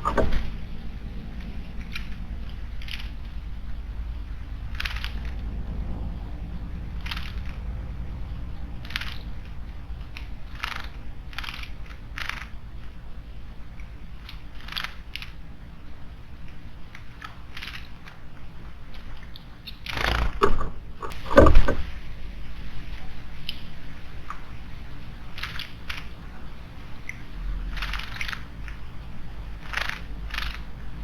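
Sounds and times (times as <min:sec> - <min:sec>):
low background rumble: 0:00.0 - 0:31.0
loud bursts of noise: 0:19.8 - 0:22.1.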